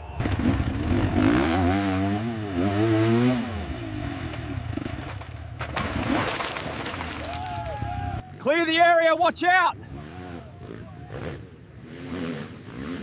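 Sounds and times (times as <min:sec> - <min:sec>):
dirt bike engine revving: 0:00.2 - 0:05.1, 0:09.8 - 0:13.0.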